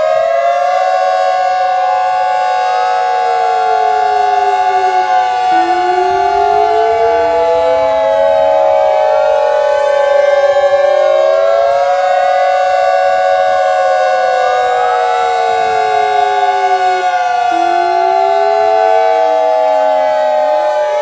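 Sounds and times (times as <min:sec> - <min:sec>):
warning sirens wailing: 0:00.0 - 0:21.0.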